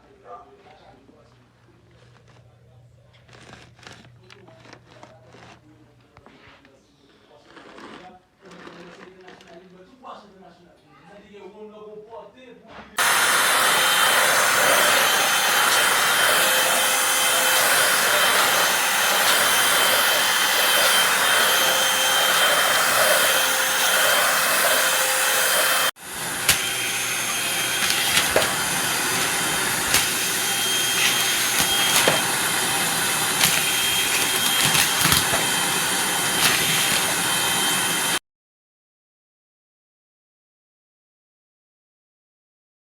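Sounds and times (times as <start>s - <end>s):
stick vacuum whirring: 13.0s - 38.2s.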